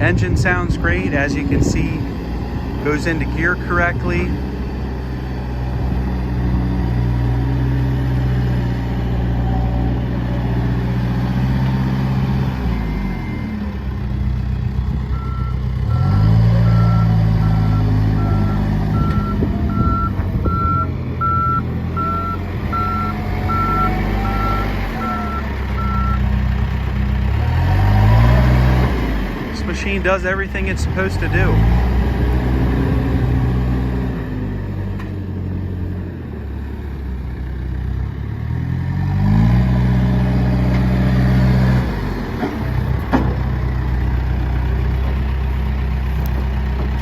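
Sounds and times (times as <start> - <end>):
backhoe diesel engine revving: 0.0 - 47.0
reverse alarm beeping: 15.2 - 26.2.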